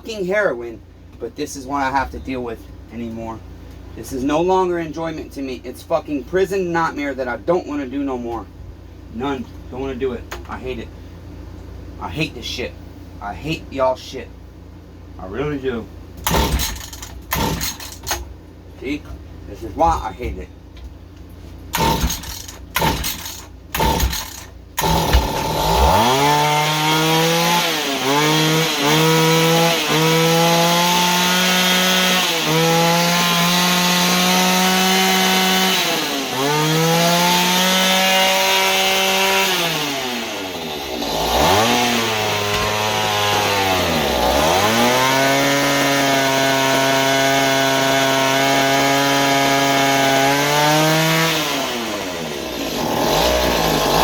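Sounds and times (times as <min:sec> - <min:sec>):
tiller engine running unevenly: 0:16.2 - 0:18.2, 0:21.7 - 0:54.0.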